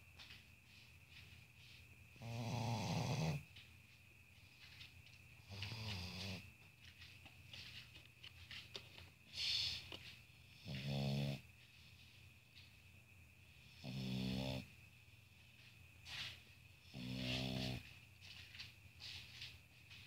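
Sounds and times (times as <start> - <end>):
dog snoring: 2.2 - 3.5, 5.4 - 6.5, 10.5 - 11.4, 13.6 - 14.7, 16.9 - 17.9.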